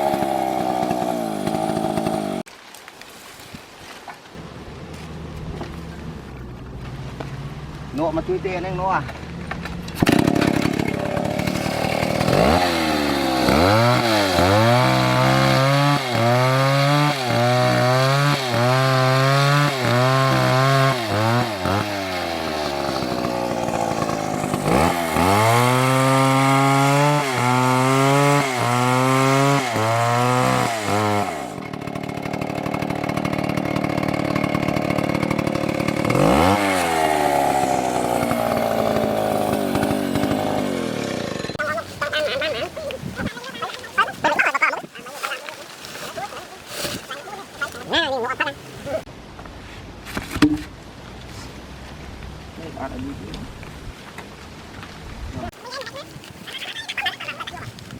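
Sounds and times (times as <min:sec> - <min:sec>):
chainsaw revving and cutting: 0:00.0 - 0:02.5, 0:10.0 - 0:49.1.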